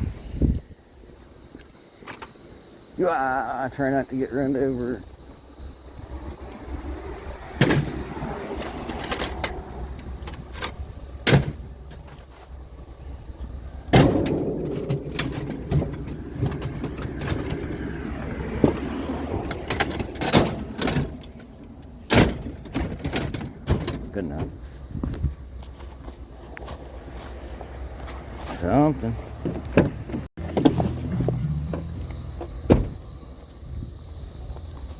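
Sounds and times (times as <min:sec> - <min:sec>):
low vehicle hum: 0:05.0 - 0:23.7, 0:24.4 - 0:34.9
scrap metal knocking and clanking: 0:13.9 - 0:24.6.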